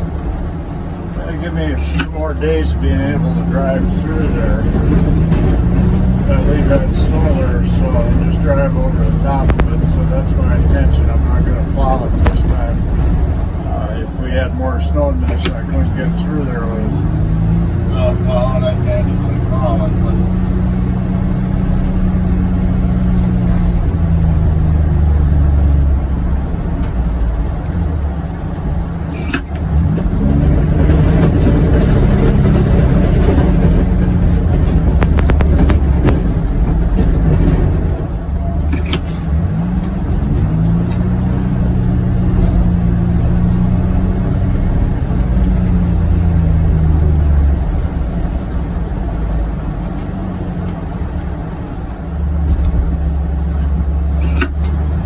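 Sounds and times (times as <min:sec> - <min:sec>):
utility vehicle engine running: 0:00.0 - 0:55.0
clunk: 0:32.3 - 0:39.3, 0:53.5 - 0:54.8.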